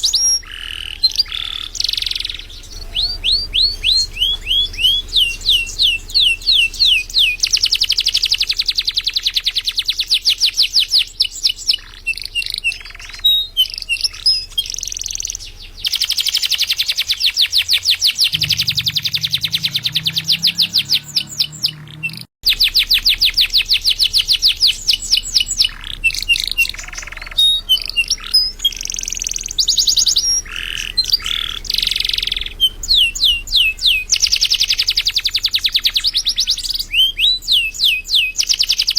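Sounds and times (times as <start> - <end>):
canary singing trills: 0.0 - 38.9.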